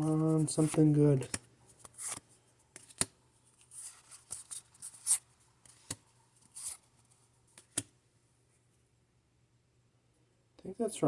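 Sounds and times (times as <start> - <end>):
cards sliding over one another: 0.4 - 6.9
cards clicking together: 0.6 - 3.1.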